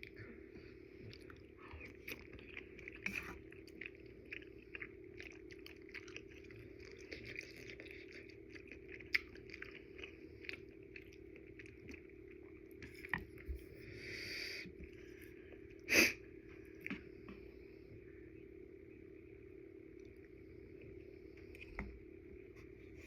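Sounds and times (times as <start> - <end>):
chewing noodles: 0.0 - 13.8
steady low hum: 0.0 - 23.0.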